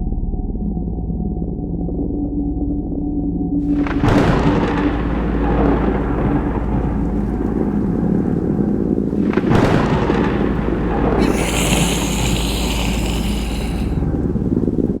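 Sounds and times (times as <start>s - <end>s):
high hiss: 11.2s - 14.0s.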